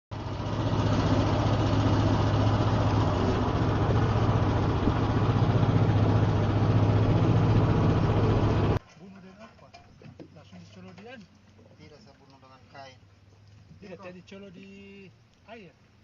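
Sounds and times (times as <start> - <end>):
boat engine running: 0.1 - 8.8.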